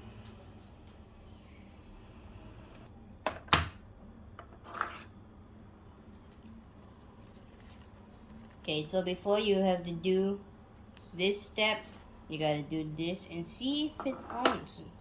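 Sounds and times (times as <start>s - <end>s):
faint room hum: 0.0s - 15.0s.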